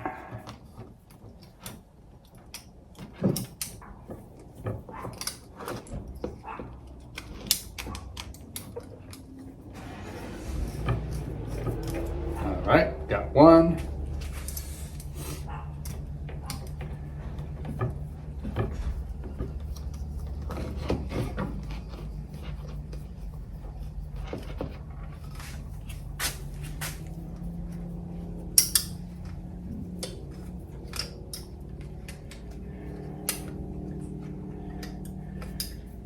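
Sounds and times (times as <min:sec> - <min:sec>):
steady low hum: 0:00.0 - 0:36.0
hand tools clicking and knocking: 0:23.9 - 0:36.0.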